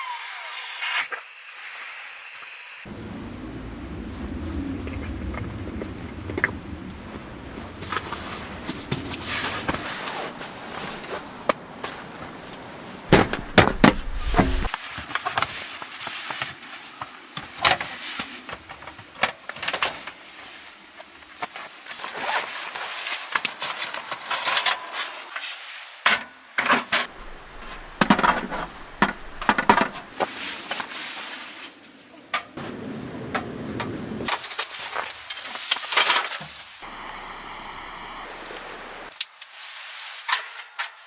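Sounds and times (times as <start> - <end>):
knocks: 13.1 - 14.7.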